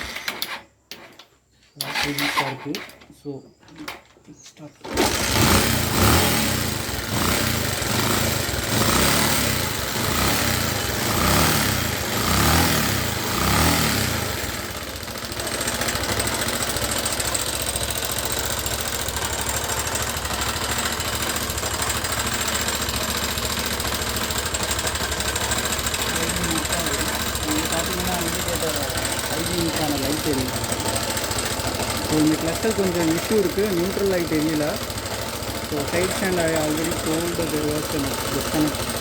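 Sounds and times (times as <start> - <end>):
motorcycle engine revving: 4.8 - 39.0
motorcycle engine idling: 4.9 - 39.0.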